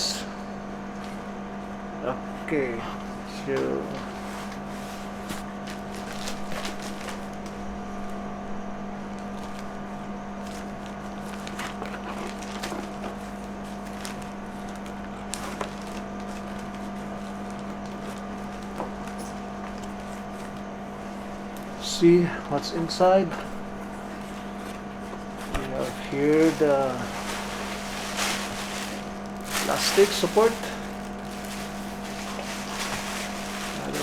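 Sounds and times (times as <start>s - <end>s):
steady hum: 0.0s - 34.0s
cardboard box scraping and crinkling: 24.0s - 34.0s.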